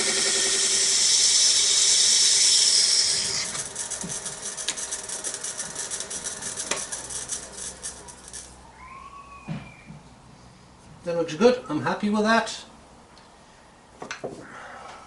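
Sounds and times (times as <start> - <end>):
lathe tool shaving wood: 0.0 - 8.5
wood lathe running: 0.0 - 8.6.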